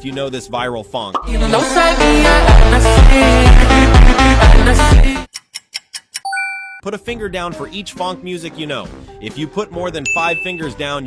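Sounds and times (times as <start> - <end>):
electronic funk dance music: 1.2 - 5.3
vocal sample melody: 1.2 - 5.6.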